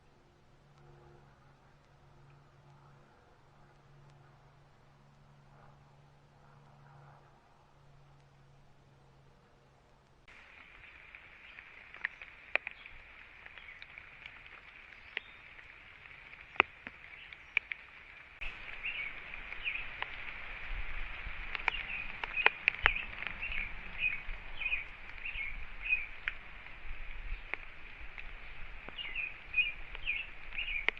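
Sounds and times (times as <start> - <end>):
low wind rumble: 0.0 - 30.9
small birds chirping: 10.3 - 30.9.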